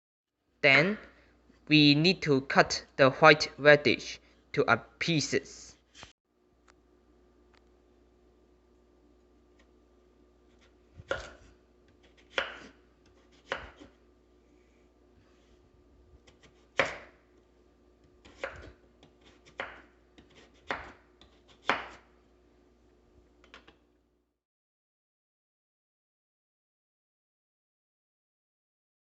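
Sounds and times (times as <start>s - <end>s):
knife chopping on cutting board: 10.5s - 14.0s, 16.2s - 17.2s, 18.1s - 22.1s.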